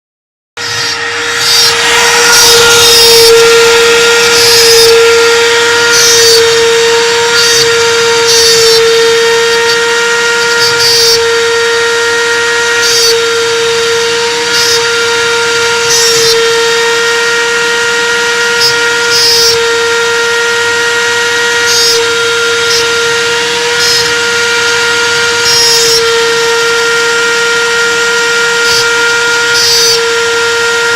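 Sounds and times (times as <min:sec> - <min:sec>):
end mill cutting metal: 0:00.6 - 0:30.9
spindle whining: 0:00.6 - 0:30.9.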